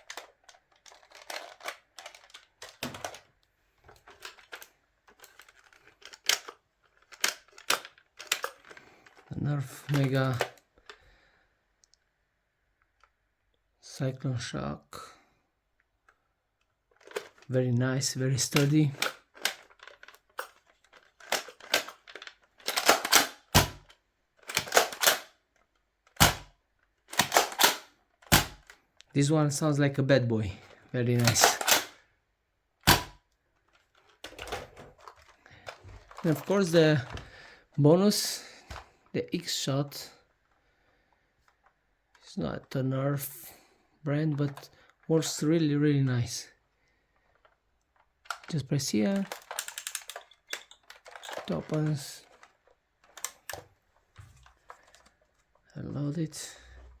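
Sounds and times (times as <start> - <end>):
plastic toy blasters clicking: 0.0 - 3.3, 4.0 - 10.6, 17.0 - 17.5, 18.4 - 25.4, 26.0 - 28.8, 31.2 - 32.0, 32.8 - 33.2, 47.4 - 53.6
sharp snaps of toy blasters: 22.7 - 23.9, 26.2 - 26.5, 27.2 - 28.7, 32.8 - 33.2.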